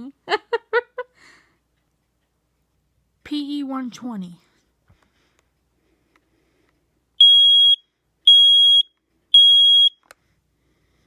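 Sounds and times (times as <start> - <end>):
smoke alarm beeps: 7.2 - 10.0.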